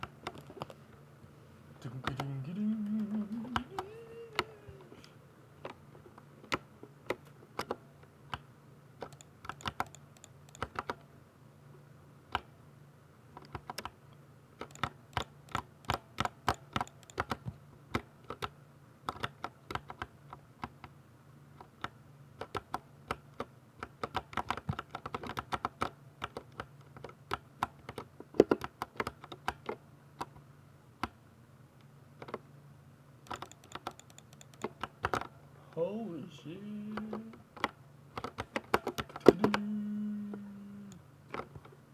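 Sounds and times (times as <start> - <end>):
mechanical keyboard typing: 2.0 - 4.7, 9.0 - 11.0, 13.4 - 14.0, 14.6 - 20.9, 21.6 - 30.4, 33.3 - 35.3, 36.7 - 41.6.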